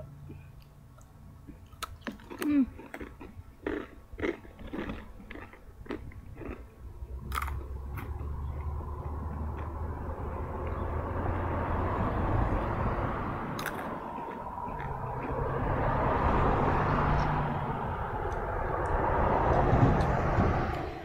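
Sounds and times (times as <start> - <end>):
crunchy snacks being chewed: 0.3 - 10.8, 13.6 - 15.4
steady low rumble: 4.5 - 21.0.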